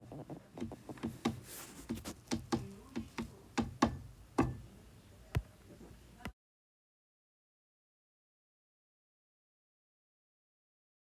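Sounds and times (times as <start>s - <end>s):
sharp clicks and knocks: 0.6s - 4.6s.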